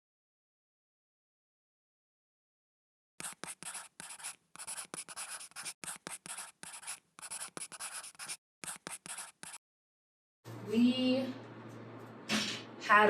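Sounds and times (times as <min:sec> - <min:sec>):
pen scratching on paper: 0:03.2 - 0:09.6.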